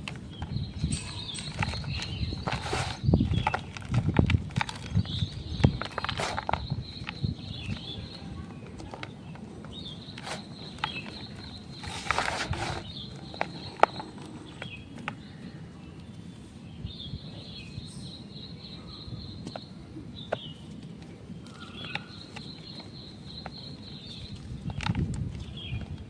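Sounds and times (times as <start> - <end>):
chalk crumbling crackles: 0.0 - 16.5
faint birds chirping: 0.0 - 26.0.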